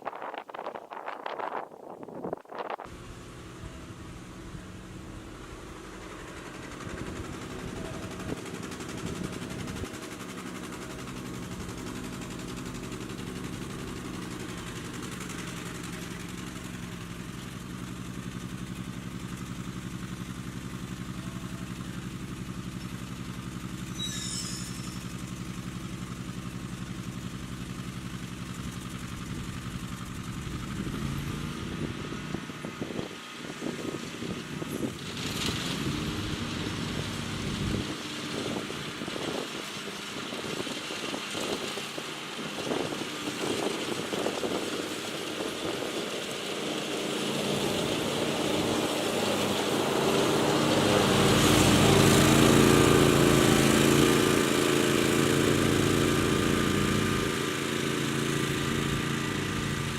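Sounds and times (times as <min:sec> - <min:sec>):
riding mower engine running: 0:00.0 - 0:59.9.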